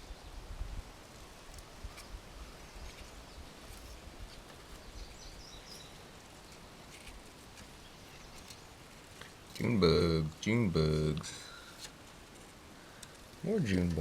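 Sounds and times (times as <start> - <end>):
faint high bird chirp: 1.9 - 7.1.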